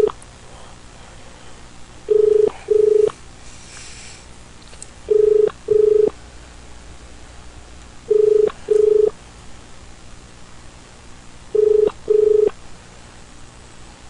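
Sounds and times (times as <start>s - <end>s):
telephone ringback tone: 2.1s - 3.1s, 5.1s - 6.1s, 8.1s - 9.1s, 11.6s - 12.5s
faint line hiss: 3.0s - 4.8s.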